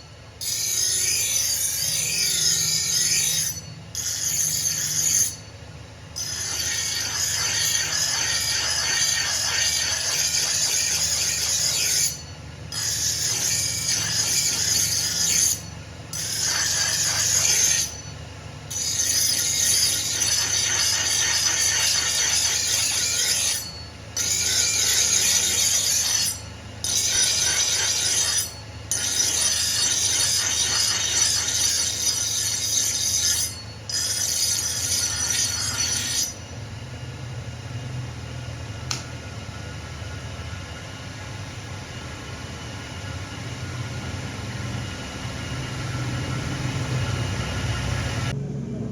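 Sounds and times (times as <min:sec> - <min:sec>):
grinder squealing on steel: 0:00.4 - 0:05.6, 0:06.2 - 0:36.6
grinder motor hum: 0:06.1 - 0:36.6.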